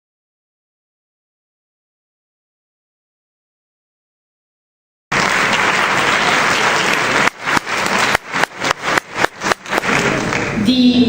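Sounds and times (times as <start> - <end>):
audience applauding: 5.1 - 10.6.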